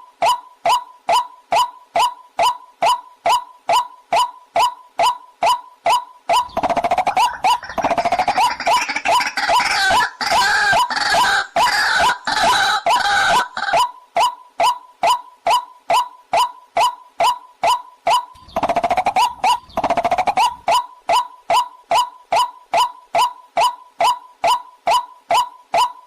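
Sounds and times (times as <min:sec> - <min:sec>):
chorus of harsh bird calls: 0:05.4 - 0:13.9, 0:16.8 - 0:22.9
waterhen kook calls: 0:06.3 - 0:13.9, 0:18.1 - 0:22.1.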